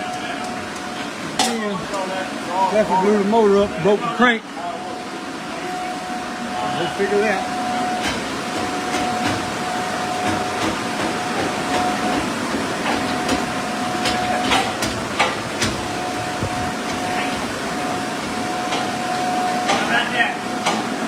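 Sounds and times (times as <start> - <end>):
machine whine: 0.0 - 21.0.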